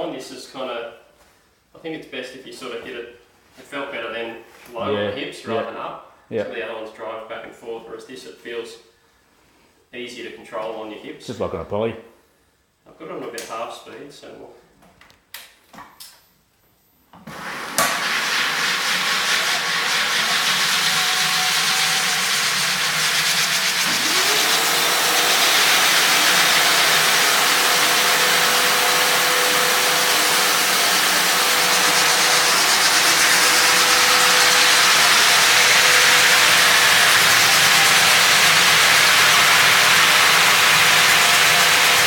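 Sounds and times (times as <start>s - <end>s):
floor sander grinding: 17.3s - 42.0s.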